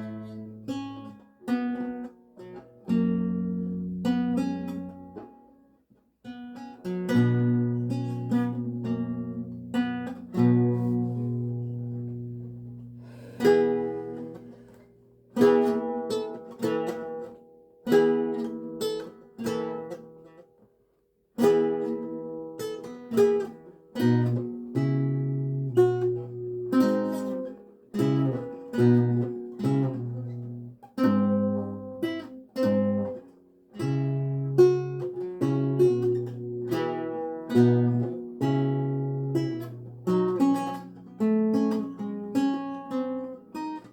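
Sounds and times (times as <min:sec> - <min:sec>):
lute playing: 0:06.6 - 0:14.8.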